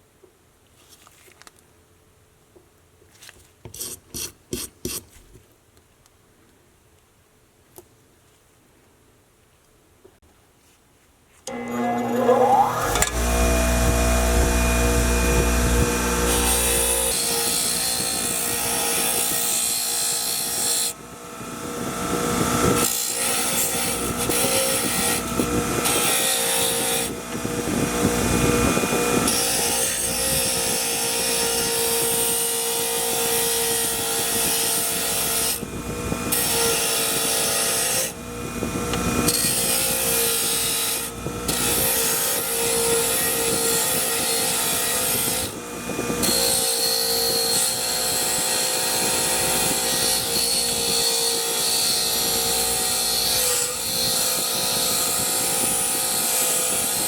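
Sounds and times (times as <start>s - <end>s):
power tool running: 11.5s - 57.0s.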